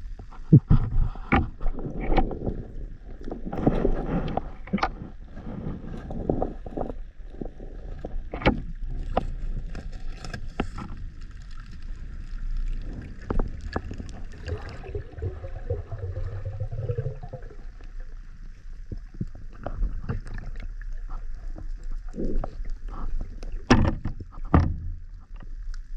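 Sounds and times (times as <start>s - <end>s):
water sloshing: 1.6s - 25.4s
low rumble: 11.1s - 20.0s.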